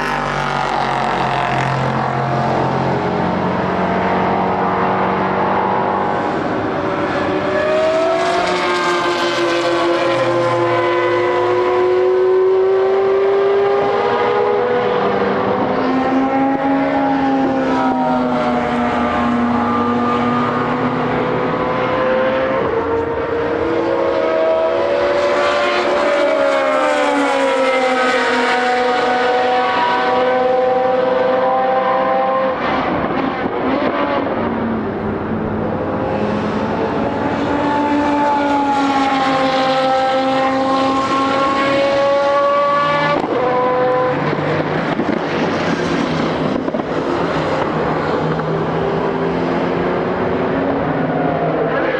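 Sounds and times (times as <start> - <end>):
racing car engines at high revs: 0.0 - 51.9.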